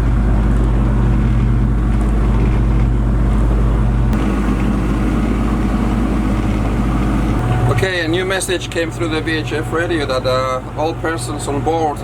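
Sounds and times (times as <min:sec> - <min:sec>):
boat engine droning: 0:03.5 - 0:09.6.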